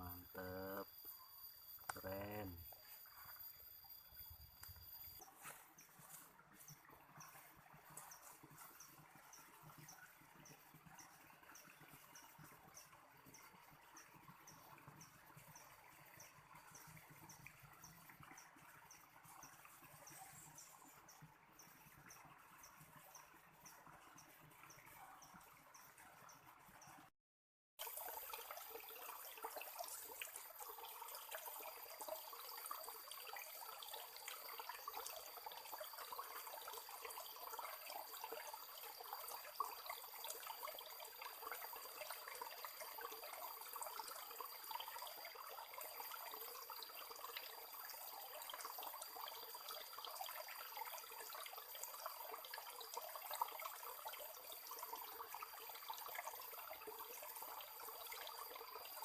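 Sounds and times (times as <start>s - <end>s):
trickle of running water: 0.0s - 27.1s, 27.8s - 59.0s.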